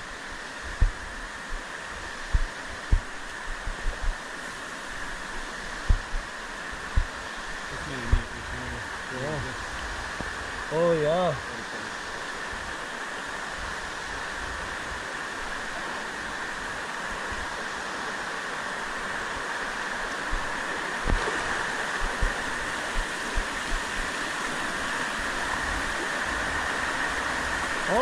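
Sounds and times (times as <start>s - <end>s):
waterfall rushing: 0.0s - 28.0s
dull low thumps: 0.7s - 1.6s, 2.3s - 4.2s, 5.8s - 6.3s, 6.9s - 7.2s, 8.0s - 8.3s, 22.0s - 24.1s.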